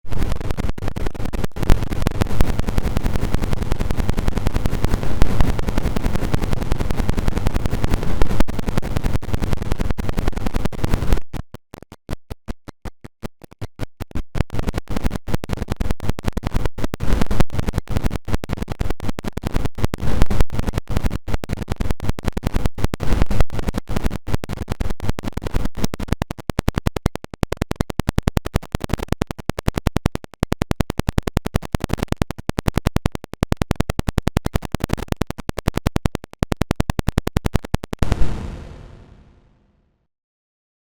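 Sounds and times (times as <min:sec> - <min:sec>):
stuttering electronic music: 0:38.0 - 0:39.4.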